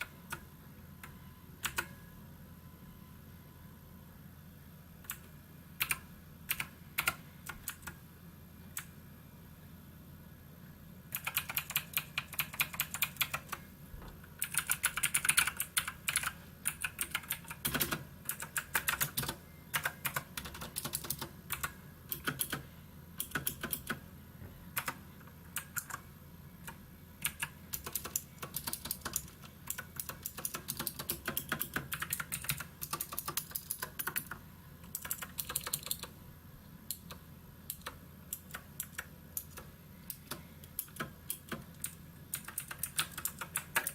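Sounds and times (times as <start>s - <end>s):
mechanical keyboard typing: 1.6s - 2.0s, 5.0s - 8.0s, 11.1s - 13.6s, 14.4s - 22.6s, 23.2s - 24.0s, 24.7s - 26.0s, 26.6s - 36.2s, 36.9s - 43.9s.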